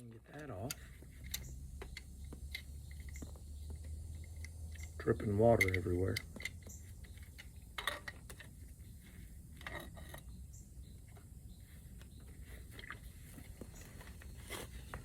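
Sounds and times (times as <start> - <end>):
metal parts clicking: 4.1 - 8.6.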